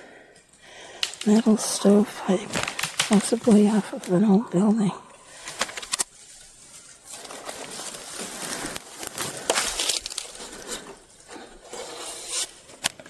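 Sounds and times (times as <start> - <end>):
moss and debris rustling: 0.6 - 12.8.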